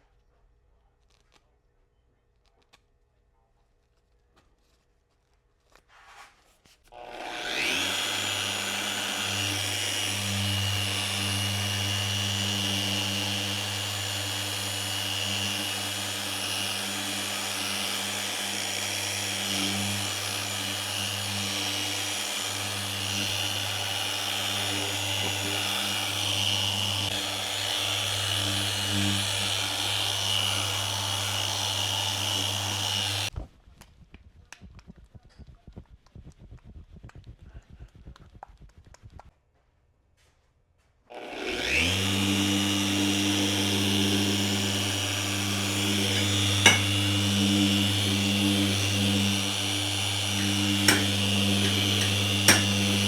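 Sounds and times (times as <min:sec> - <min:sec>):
power tool humming and whining: 0:06.9 - 0:33.3, 0:41.1 - 0:53.0
tool rubbing against surface: 0:42.2 - 0:53.0.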